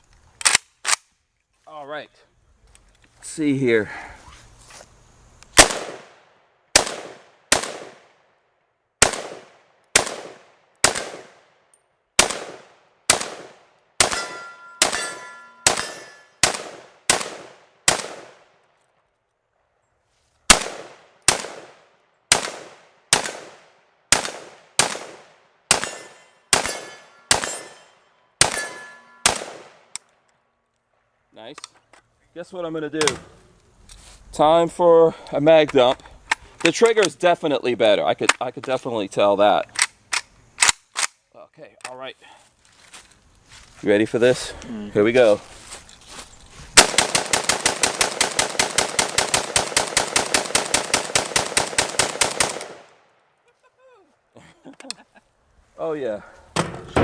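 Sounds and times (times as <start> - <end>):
rifle shots with echo: 5.6 - 8.3, 9.0 - 11.5, 12.2 - 18.6, 20.5 - 29.9, 46.8 - 53.0.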